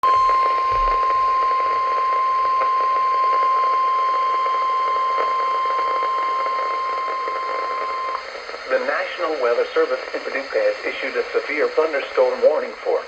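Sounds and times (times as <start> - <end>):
steady warning alarm tone: 0.0 - 10.0
radio static: 0.0 - 13.0.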